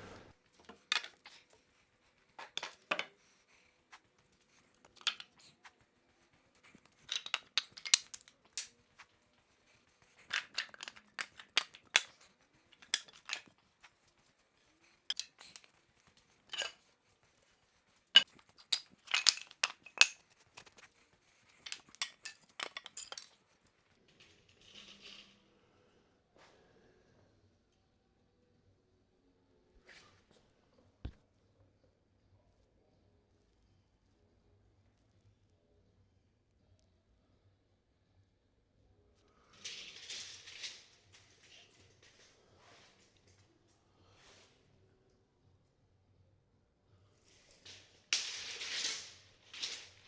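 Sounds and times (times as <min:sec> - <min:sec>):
small tools clicking and clattering: 0:00.6 - 0:01.7, 0:02.4 - 0:05.7, 0:06.6 - 0:09.0, 0:10.0 - 0:23.6, 0:47.7 - 0:50.0.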